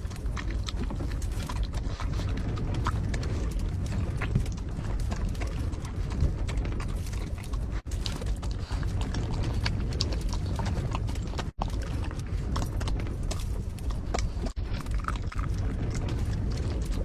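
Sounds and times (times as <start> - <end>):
pet chewing and lapping: 0.0 - 17.0
strong wind rumble: 0.0 - 17.0.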